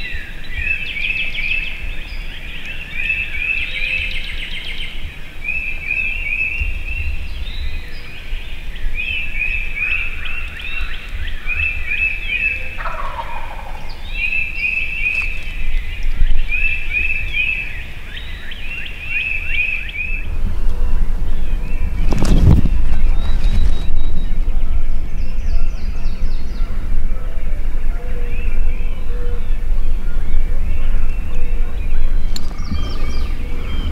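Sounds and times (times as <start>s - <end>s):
songbirds chirping: 0.0s - 33.9s
wild turkey gobbling: 9.7s - 20.3s.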